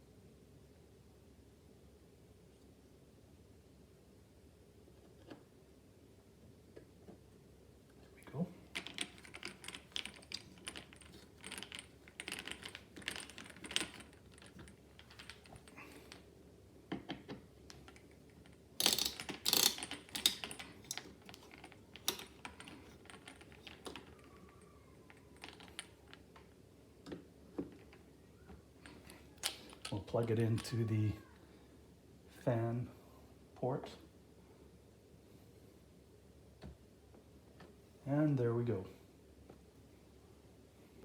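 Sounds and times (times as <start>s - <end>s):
clatter of handling: 8.6s - 16.3s, 16.9s - 30.7s
screwdriver clicks and scrapes: 18.8s - 24.0s.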